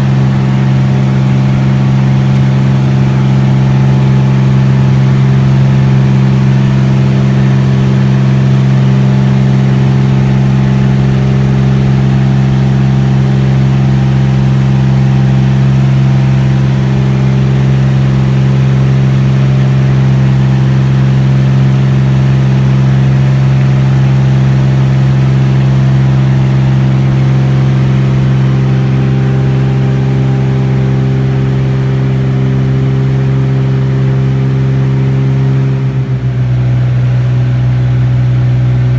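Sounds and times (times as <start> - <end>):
propeller plane engine droning: 0.0 - 38.9.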